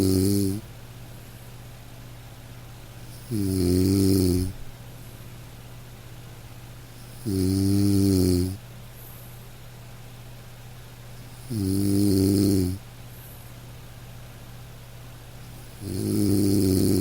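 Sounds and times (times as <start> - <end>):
nasal snoring: 0.0 - 0.6, 3.1 - 4.6, 7.0 - 8.6, 11.4 - 12.8, 15.6 - 17.0.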